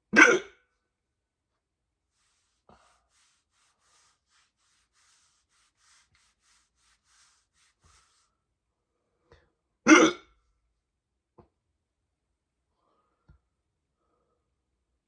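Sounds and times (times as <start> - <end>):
faint hiss: 2.2 - 8.3.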